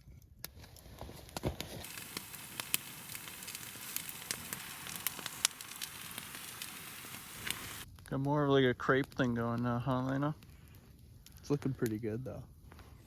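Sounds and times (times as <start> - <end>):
pops and crackles: 0.4 - 8.3
hash browns sizzling in a pan: 1.1 - 7.8.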